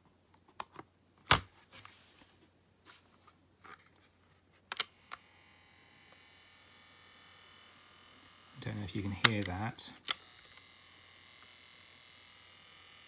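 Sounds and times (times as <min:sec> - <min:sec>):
cassette motor whirring: 0:04.8 - 0:13.0
cassette player plastic clicks: 0:09.1 - 0:10.7.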